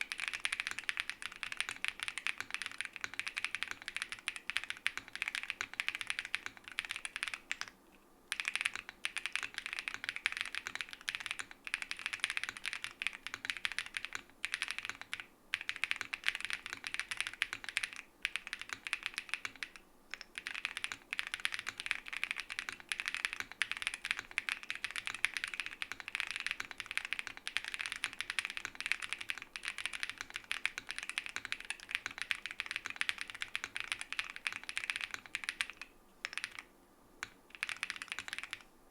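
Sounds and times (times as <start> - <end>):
fast typing on mechanical keyboard: 0.0 - 7.7, 8.3 - 38.7.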